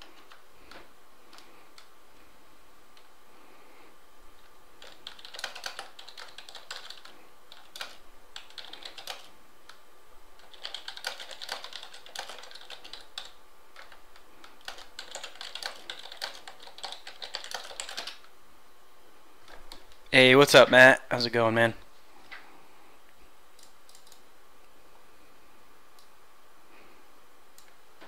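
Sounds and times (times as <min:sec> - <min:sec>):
computer keyboard typing: 0:00.0 - 0:01.9, 0:04.8 - 0:09.8, 0:10.4 - 0:18.3, 0:23.6 - 0:24.2.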